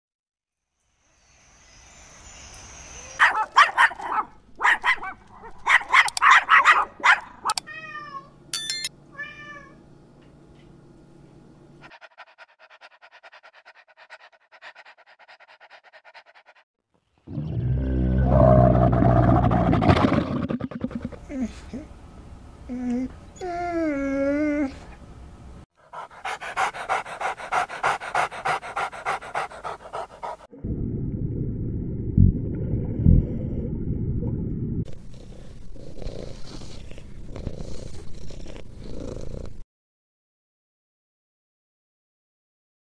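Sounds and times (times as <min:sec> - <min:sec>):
animal panting rapidly: 0:11.8 - 0:16.6, 0:25.8 - 0:30.5.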